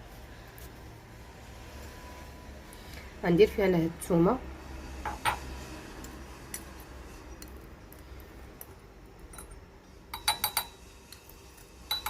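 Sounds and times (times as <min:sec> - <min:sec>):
metal utensil clinking on glass jar: 0:09.3 - 0:12.0.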